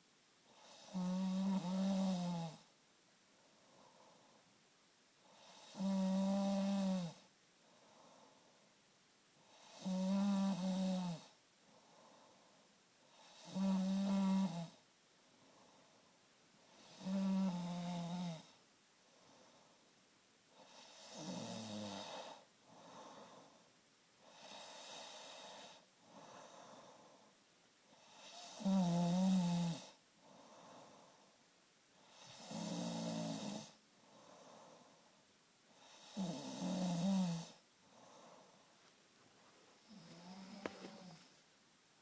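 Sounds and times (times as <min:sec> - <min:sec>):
quiet breaths: 0:00.0 - 0:42.0
man snoring: 0:00.6 - 0:02.6, 0:05.4 - 0:07.2, 0:09.6 - 0:11.3, 0:13.1 - 0:14.8, 0:16.8 - 0:18.5, 0:20.7 - 0:22.4, 0:28.0 - 0:29.9, 0:32.1 - 0:33.8, 0:35.8 - 0:37.6, 0:39.9 - 0:41.2.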